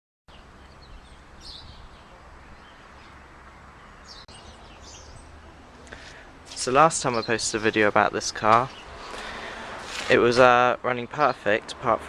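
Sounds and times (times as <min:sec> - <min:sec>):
faint low background noise: 0:00.3 - 0:09.5
small birds chirping: 0:00.3 - 0:10.3.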